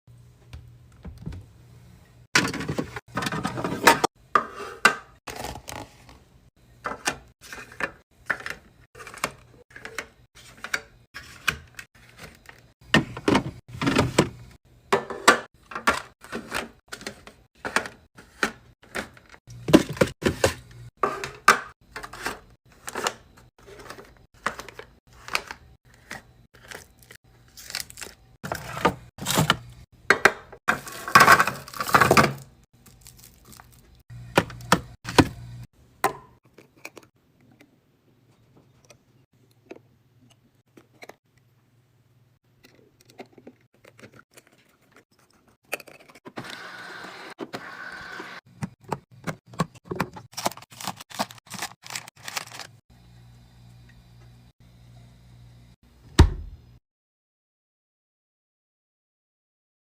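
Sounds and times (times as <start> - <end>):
food containers knocking and clinking: 12.2 - 23.1, 28.5 - 32.6, 48.5 - 51.0.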